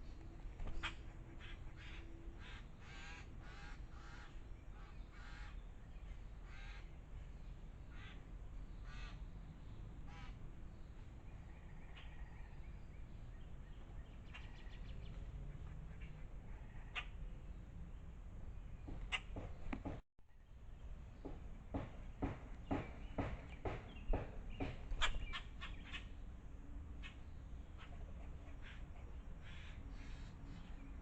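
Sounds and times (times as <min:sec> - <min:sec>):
bird calling harshly: 0:00.7 - 0:05.6, 0:08.8 - 0:09.2.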